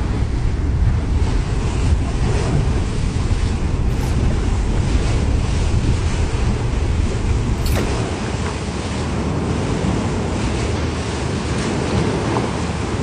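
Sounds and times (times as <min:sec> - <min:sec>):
pool water surging and splashing: 0:06.9 - 0:13.0.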